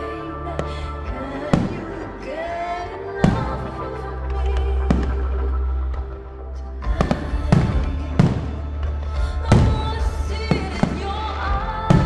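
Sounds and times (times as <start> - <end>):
music playing: 0.0 - 12.0
fireworks bursting with echoing bangs: 1.5 - 2.1, 3.2 - 3.8, 4.8 - 5.5, 6.9 - 12.0.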